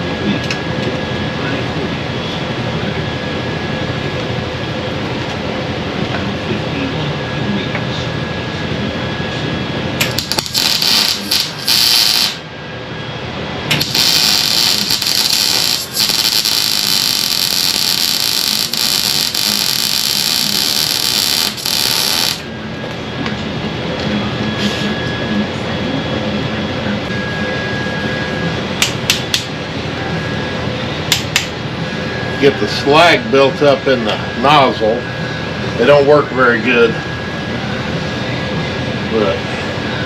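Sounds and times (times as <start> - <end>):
steady hum: 0.0 - 40.0
welder arc crackling: 10.0 - 12.4, 13.7 - 22.5.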